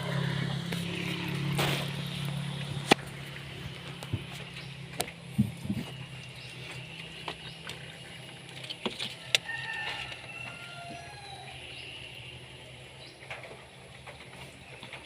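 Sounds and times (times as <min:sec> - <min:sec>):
steady low hum: 0:00.0 - 0:09.4.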